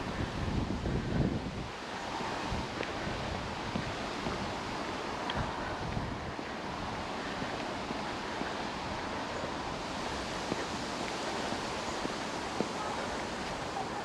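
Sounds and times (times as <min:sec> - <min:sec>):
wind buffeting microphone: 0:00.0 - 0:14.0
faint footstep clicks: 0:05.2 - 0:06.1, 0:10.0 - 0:13.8.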